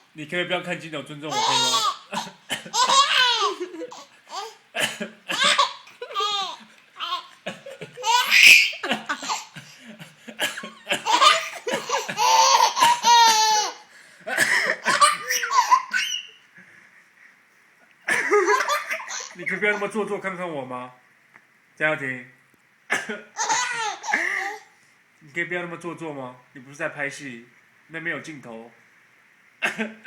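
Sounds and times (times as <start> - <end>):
young child laughing: 1.3 - 9.6, 10.8 - 13.8, 14.8 - 16.4.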